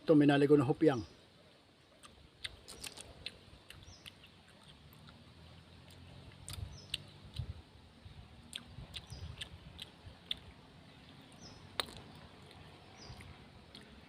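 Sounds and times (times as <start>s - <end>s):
chewing: 1.9s - 7.6s, 8.4s - 14.0s.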